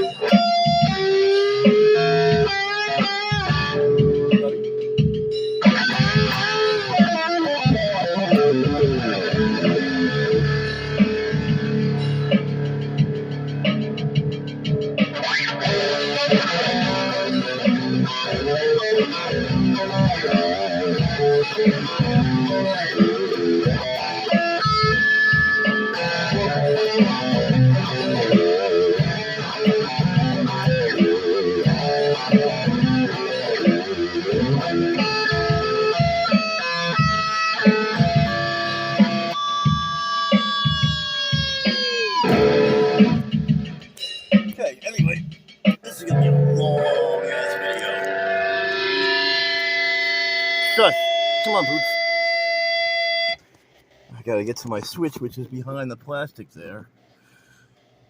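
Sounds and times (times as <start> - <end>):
electric guitar run with bends: 0.0 - 43.5, 46.1 - 51.4
electric guitar wavering note: 46.0 - 53.4.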